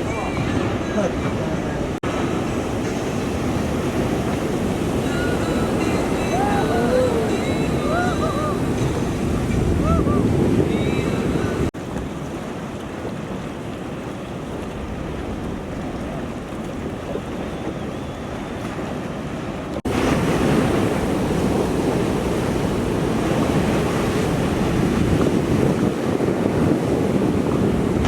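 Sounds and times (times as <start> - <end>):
ocean surf breaking: 0.0 - 28.0
wind rumbling on microphone: 0.0 - 28.0.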